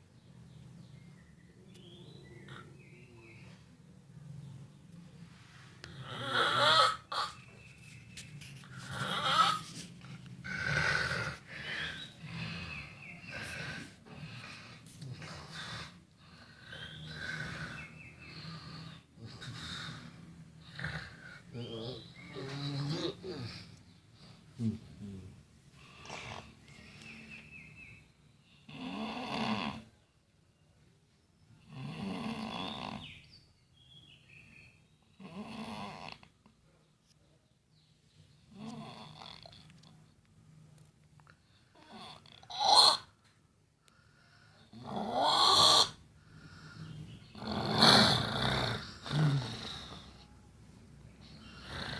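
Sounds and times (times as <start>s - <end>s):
person snoring: 5.9s - 7.3s, 10.4s - 15.9s, 47.3s - 50.2s, 51.4s - 51.9s.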